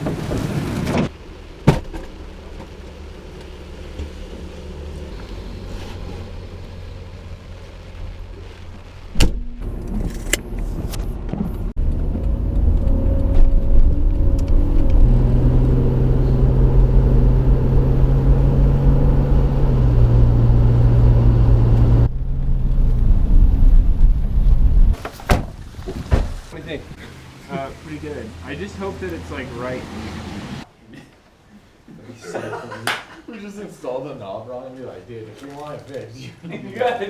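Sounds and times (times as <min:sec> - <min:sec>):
vehicle engine hum: 0:00.0 - 0:30.7
road rumble: 0:00.0 - 0:31.9.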